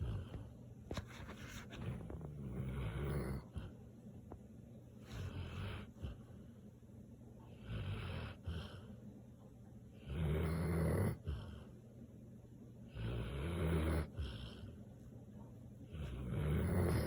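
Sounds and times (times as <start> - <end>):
dog snoring: 0.0 - 0.5, 1.6 - 3.8, 5.0 - 6.5, 7.5 - 9.0, 10.0 - 11.8, 12.9 - 14.8, 15.8 - 17.0.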